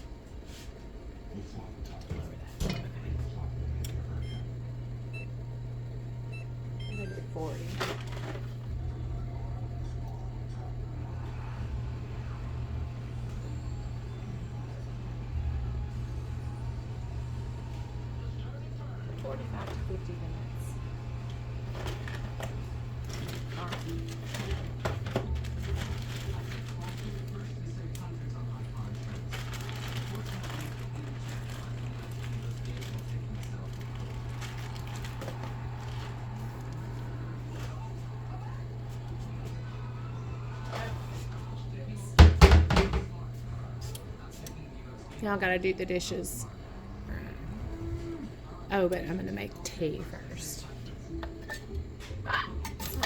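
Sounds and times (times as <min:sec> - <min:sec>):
steady low hum: 0:00.0 - 0:53.0
kitchen items clicking and clattering: 0:21.7 - 0:28.1, 0:28.8 - 0:36.6, 0:42.2 - 0:43.2, 0:51.2 - 0:53.0.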